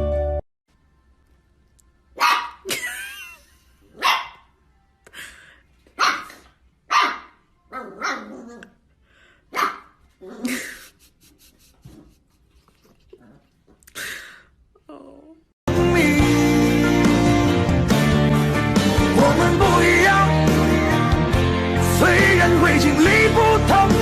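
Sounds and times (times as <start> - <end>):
dog barking: 2.2 - 2.7, 3.9 - 4.5, 6.0 - 8.6, 9.5 - 10.0.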